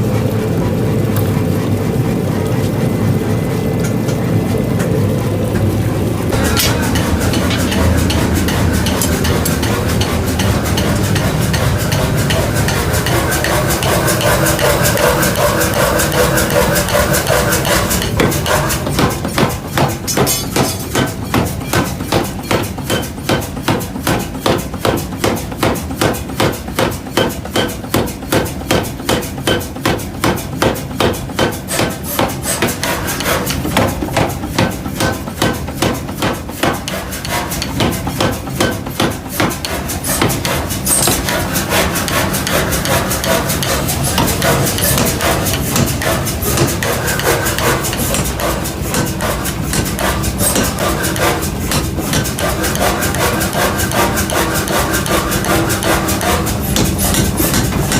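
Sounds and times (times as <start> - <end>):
metal clatter: 6.3 - 22.7.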